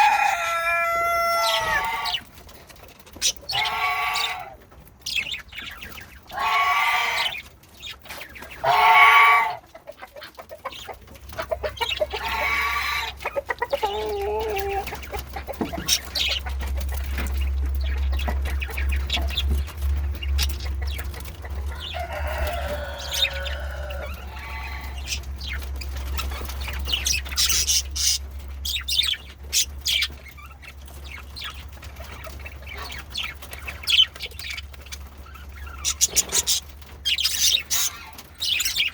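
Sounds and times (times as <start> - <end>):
budgerigars squawking and chattering: 0.0 - 38.9.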